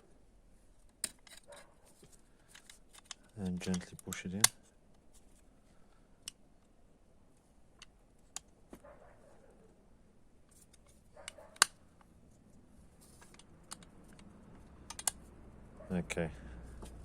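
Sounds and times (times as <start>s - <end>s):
metallic clicks of lock parts: 0.8s - 4.7s, 6.2s - 6.8s, 7.8s - 8.6s, 10.5s - 12.1s, 13.1s - 15.3s.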